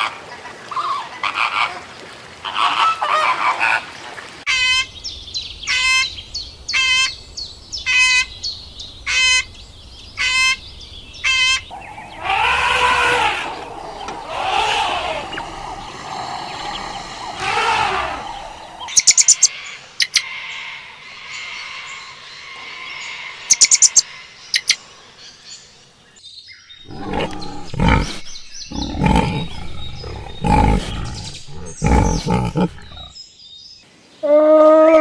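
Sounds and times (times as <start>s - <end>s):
loud rough animal calls: 11.2s - 19.0s, 26.8s - 33.2s.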